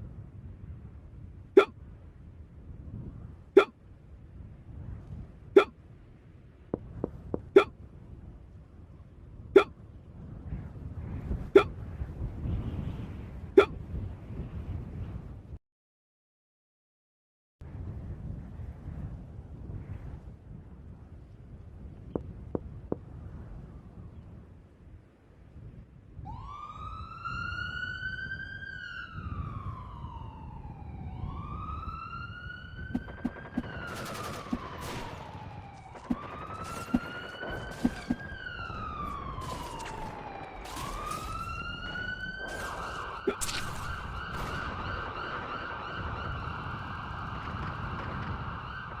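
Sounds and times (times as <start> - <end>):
siren wailing: 26.3 - 49.0
sharp gunshots: 33.0 - 38.4, 39.4 - 45.2.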